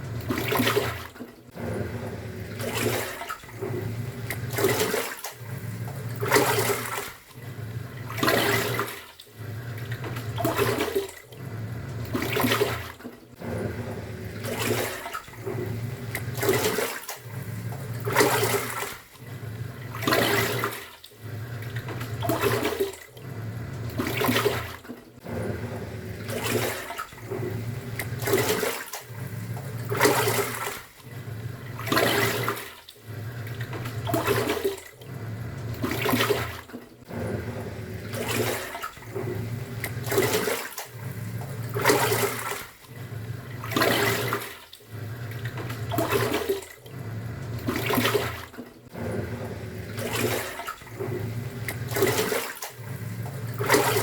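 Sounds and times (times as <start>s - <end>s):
washing machine motor churning: 0.0s - 54.0s
water sloshing: 0.0s - 54.0s.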